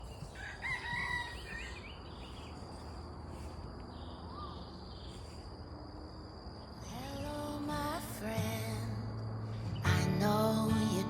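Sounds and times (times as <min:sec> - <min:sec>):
birds warbling whistles: 0:00.0 - 0:02.6.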